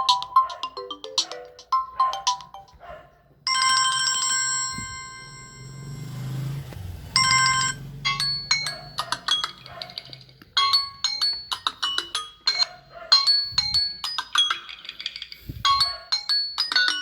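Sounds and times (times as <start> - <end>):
melodic phone ringtone: 0.0 - 2.8, 3.5 - 6.1, 7.2 - 17.0.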